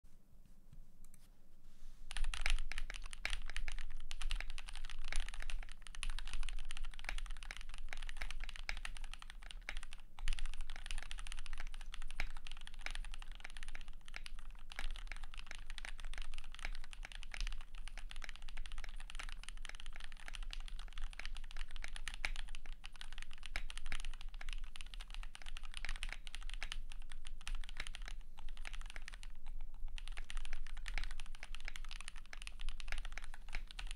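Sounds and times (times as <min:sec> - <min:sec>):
rapid mechanical keyboard typing: 0:02.1 - 0:33.9.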